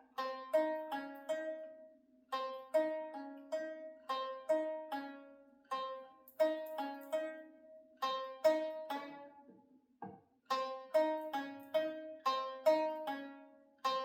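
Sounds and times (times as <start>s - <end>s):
plucked string melody: 0.0s - 14.0s.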